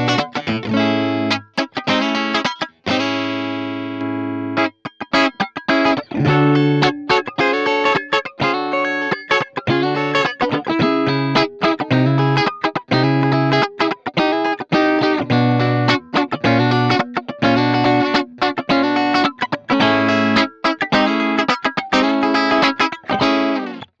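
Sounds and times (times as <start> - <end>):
electric guitar rhythmic chords: 0.0 - 24.0.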